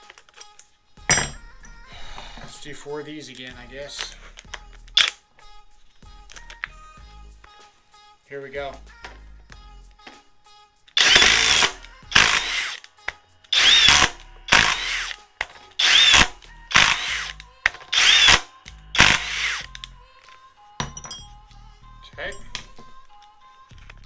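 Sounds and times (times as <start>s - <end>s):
impact driver hammering: 11.0s - 12.8s, 13.6s - 15.1s, 15.8s - 18.4s, 19.0s - 19.6s.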